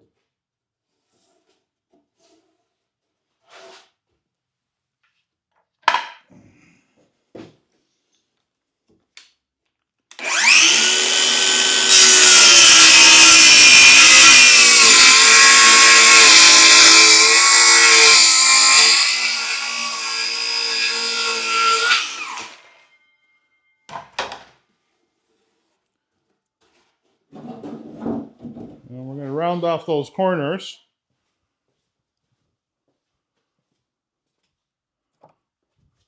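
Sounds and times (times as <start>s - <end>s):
electric power saw cutting wood: 10.1s - 22.8s.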